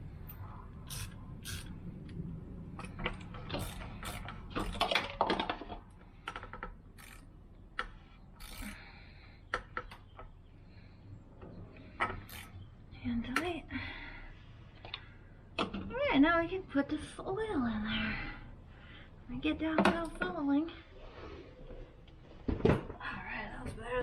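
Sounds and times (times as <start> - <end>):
hard parts clicking and scraping: 0.2 - 10.4, 11.4 - 12.6.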